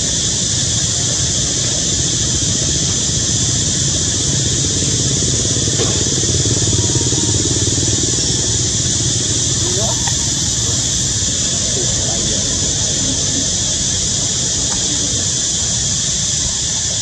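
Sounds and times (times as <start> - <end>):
engine running: 0.0 - 17.0
high hiss: 0.0 - 17.0.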